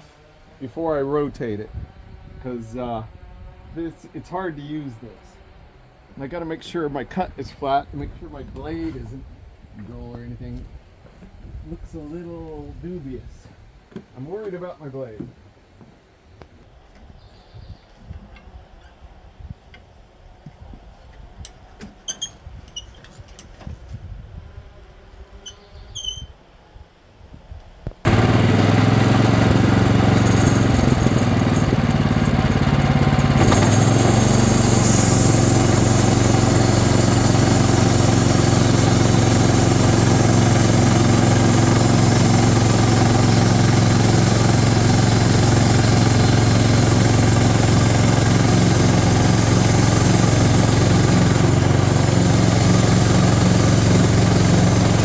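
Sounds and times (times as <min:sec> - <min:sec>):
sawmill engine running: 0:28.1 - 0:55.0.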